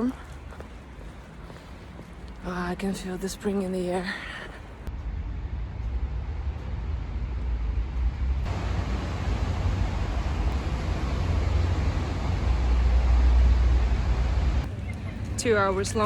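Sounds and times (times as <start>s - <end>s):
low rumble: 4.8s - 16.0s.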